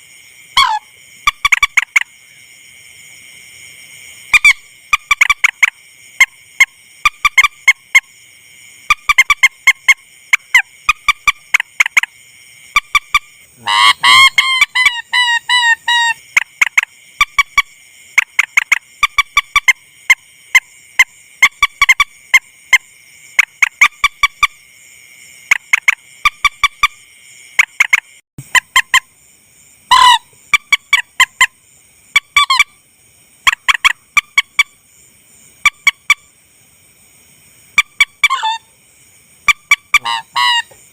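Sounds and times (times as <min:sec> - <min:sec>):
rail bird calls: 0:12.8 - 0:16.9, 0:29.9 - 0:31.5, 0:37.8 - 0:38.7, 0:39.5 - 0:40.9
harsh rattling bird call: 0:12.8 - 0:19.8, 0:37.8 - 0:38.8, 0:39.5 - 0:40.9.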